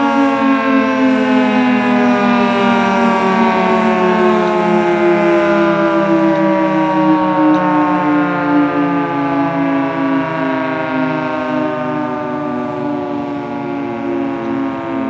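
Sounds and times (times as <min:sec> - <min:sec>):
dual-tone warning siren: 0:00.0 - 0:15.0.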